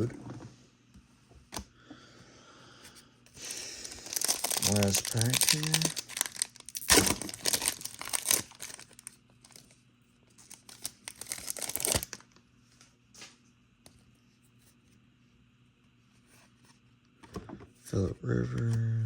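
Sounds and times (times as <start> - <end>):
wrapper tearing and crinkling: 3.8 - 9.7, 10.4 - 12.3.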